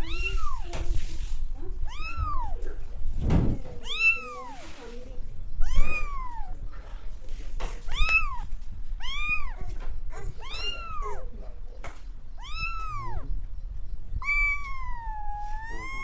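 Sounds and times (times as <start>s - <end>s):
cat meowing: 0.0s - 0.8s, 1.8s - 2.7s, 3.8s - 4.7s, 5.5s - 6.6s, 7.8s - 11.4s, 12.3s - 13.4s, 14.2s - 16.0s.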